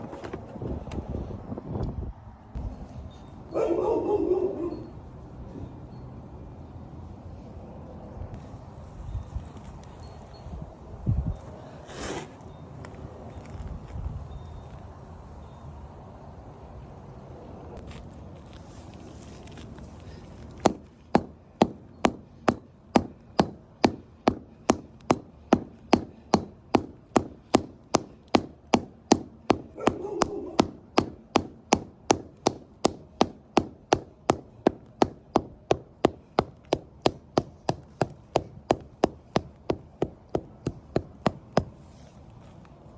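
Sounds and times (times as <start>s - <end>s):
hammer blows on pavers: 20.0s - 42.1s.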